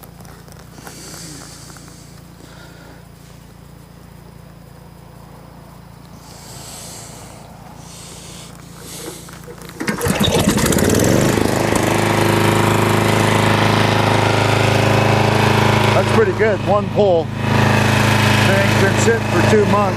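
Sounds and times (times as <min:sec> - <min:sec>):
generator engine running: 0:00.0 - 0:19.9
recoil starter rope pull: 0:07.9 - 0:14.4.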